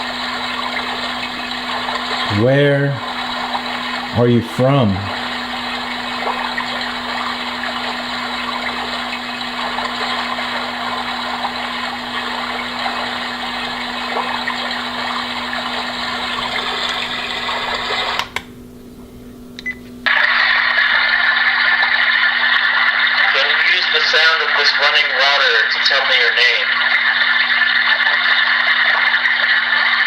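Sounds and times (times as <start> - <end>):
running water hiss: 0.0 - 18.6
low hum: 0.0 - 20.1
clicks: 18.1 - 18.6.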